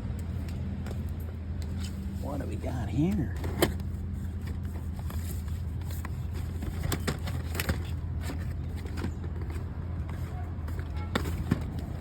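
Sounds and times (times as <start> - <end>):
plastic cases clicking and knocking: 6.0 - 10.0, 10.7 - 12.0.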